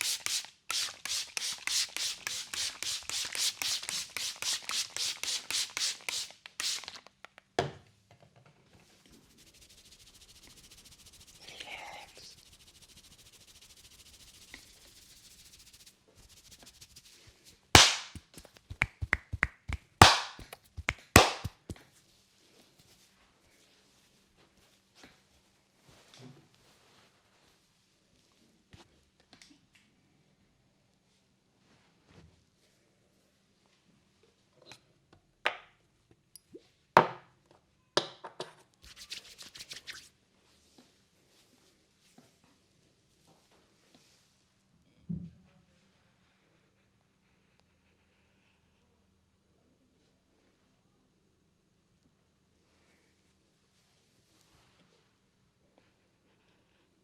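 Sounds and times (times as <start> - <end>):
faint rubbing: 0.0 - 7.0
fast chopping massage strokes: 0.0 - 7.1, 12.5 - 21.8
hands slapping a head: 0.0 - 7.5, 17.8 - 21.8.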